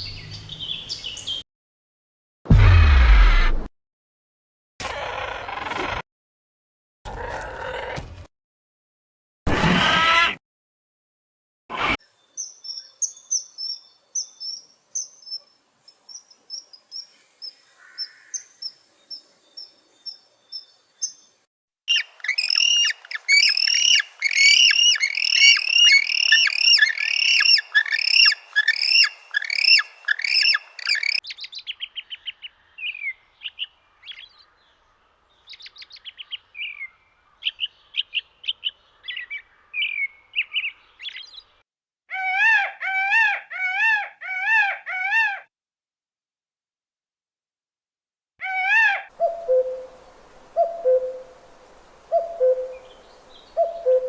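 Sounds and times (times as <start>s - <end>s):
small birds chirping: 12.2s - 41.6s, 49.2s - 54.0s.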